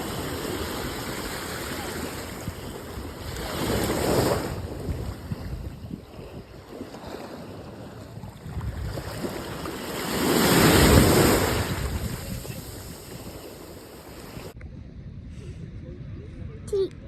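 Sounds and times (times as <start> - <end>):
sea waves washing ashore: 0.0 - 14.6
wind buffeting microphone: 0.0 - 17.0.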